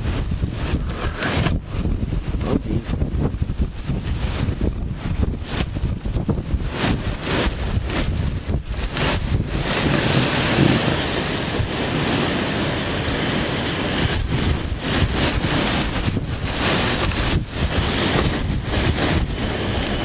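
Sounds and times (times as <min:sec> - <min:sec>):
rain: 0:00.0 - 0:20.0
wind buffeting microphone: 0:00.0 - 0:20.0.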